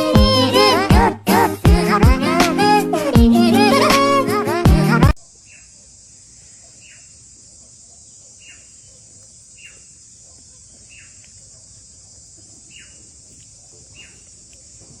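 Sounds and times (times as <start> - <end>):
insect chorus hiss: 5.2 - 15.0.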